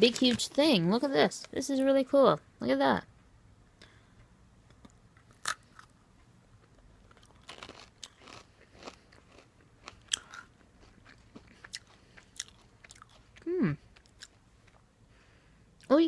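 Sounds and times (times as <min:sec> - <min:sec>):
cracker being chewed: 0:04.8 - 0:14.9.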